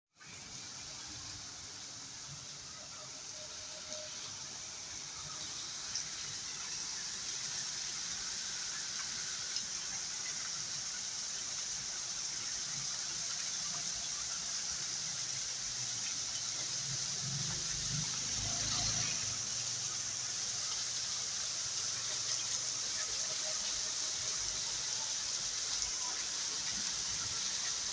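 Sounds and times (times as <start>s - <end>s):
heavy rain pouring: 2.0s - 8.3s, 12.4s - 27.9s.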